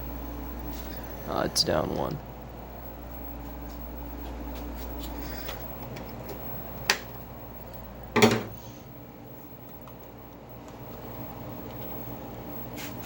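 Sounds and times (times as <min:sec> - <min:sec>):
low electrical hum: 0:00.0 - 0:13.0
loud clunk: 0:08.2 - 0:08.6.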